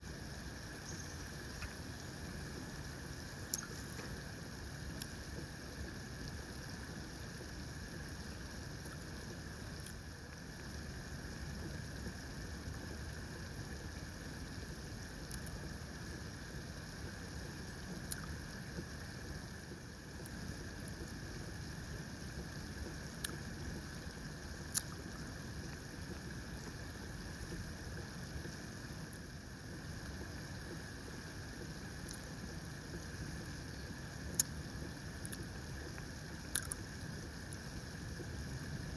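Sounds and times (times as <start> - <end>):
faint hiss: 0.0 - 38.9
low outdoor rumble: 0.0 - 38.9
faint sharp clicks: 24.7 - 25.0, 32.0 - 32.2, 36.5 - 36.9.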